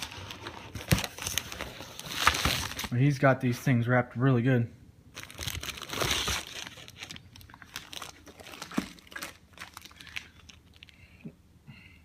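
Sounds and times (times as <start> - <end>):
packing wrap crinkling: 0.0 - 3.0, 5.1 - 11.0.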